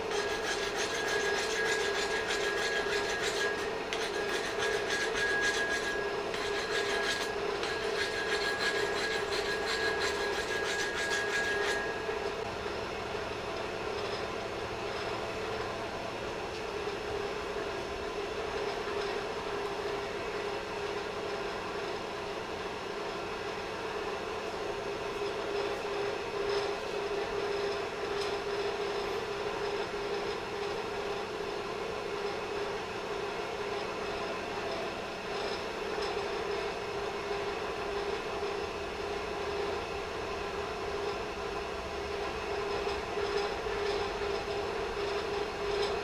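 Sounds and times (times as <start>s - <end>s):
steady hum: 0.0s - 21.9s.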